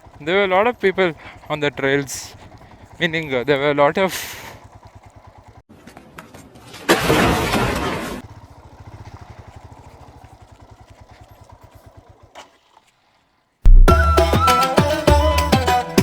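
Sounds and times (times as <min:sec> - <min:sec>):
motorcycle engine idling: 0:00.0 - 0:05.6, 0:08.2 - 0:12.7.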